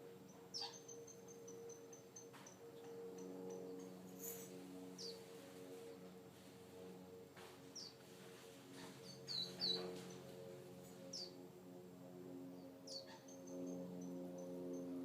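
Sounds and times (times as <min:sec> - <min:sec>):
steady low hum: 0:00.0 - 0:15.0
quail chirping: 0:00.5 - 0:01.2, 0:13.0 - 0:13.4.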